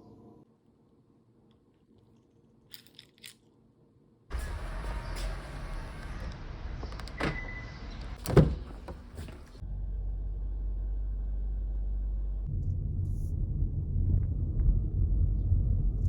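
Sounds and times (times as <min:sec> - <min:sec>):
car rumbling: 0:04.3 - 0:16.0.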